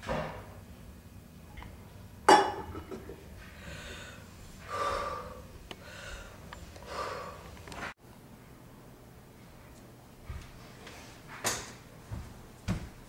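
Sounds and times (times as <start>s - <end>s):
person breathing deeply: 3.5s - 7.6s.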